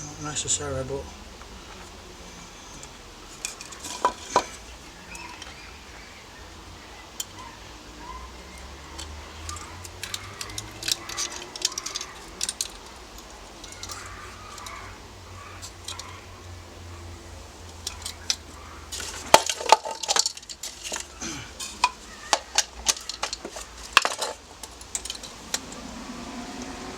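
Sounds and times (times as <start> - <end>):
metal tools clinking on workbench: 2.8 - 5.6, 8.4 - 14.9, 17.6 - 25.8.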